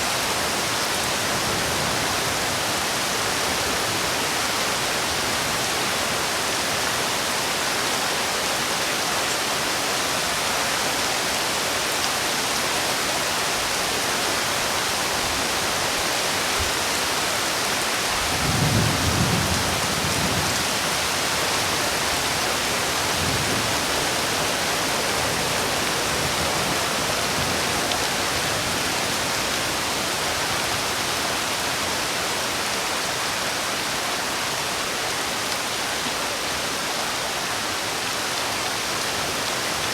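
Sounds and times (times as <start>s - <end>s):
heavy rain falling: 0.0s - 39.9s
low rumble of thunder: 18.3s - 20.8s.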